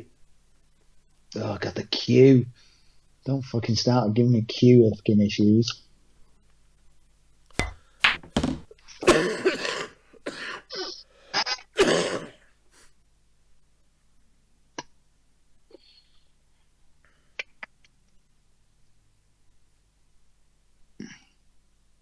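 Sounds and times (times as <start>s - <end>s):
person coughing: 9.0s - 12.5s, 21.0s - 21.4s.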